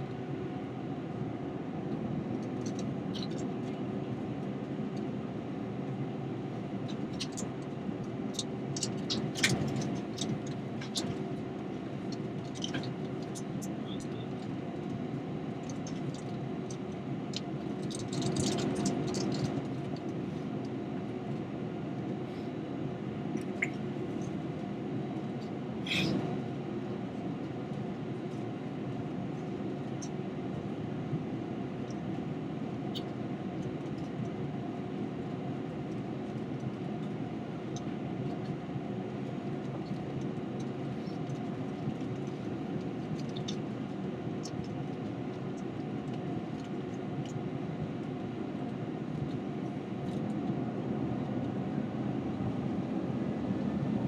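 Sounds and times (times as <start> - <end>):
airplane cabin drone: 0.0 - 54.0.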